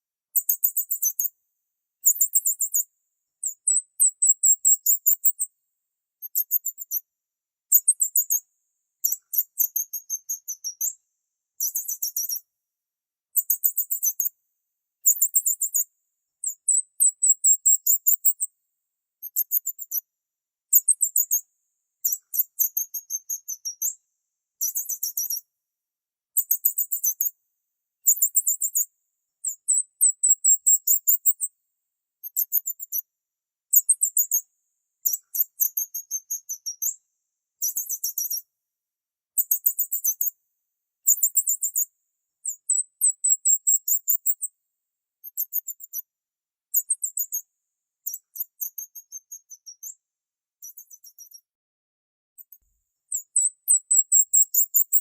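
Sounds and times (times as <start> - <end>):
small bird chirping: 0.3 - 1.4, 2.0 - 5.5, 6.2 - 7.1, 7.7 - 11.0, 11.6 - 12.5, 13.3 - 14.4, 15.0 - 18.5, 19.2 - 20.1, 20.7 - 24.0, 24.6 - 25.5, 26.4 - 27.4, 28.0 - 31.5, 32.2 - 33.1, 33.7 - 37.0, 37.6 - 38.5, 39.4 - 40.4, 41.0 - 44.5, 45.2 - 46.1, 46.7 - 50.0, 50.6 - 51.5, 52.4 - 55.0.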